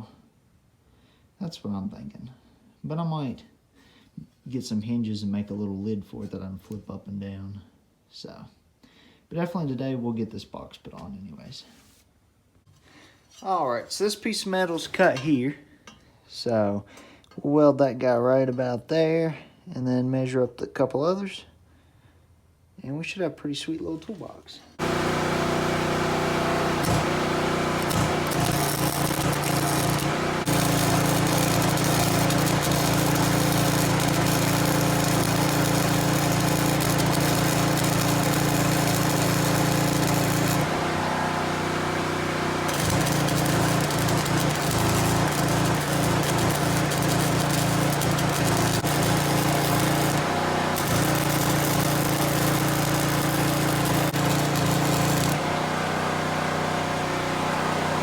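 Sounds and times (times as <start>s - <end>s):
welding arc crackling: 24.8s - 55.6s
generator engine drone: 24.8s - 58.0s.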